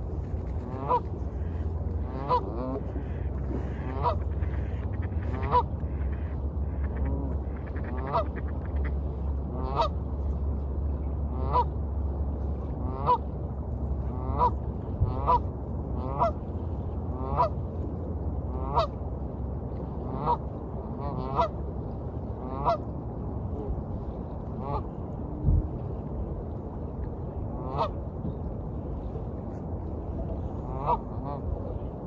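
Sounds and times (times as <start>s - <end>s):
low wash of waves: 0.0s - 32.0s
duck quacking: 0.7s - 9.0s.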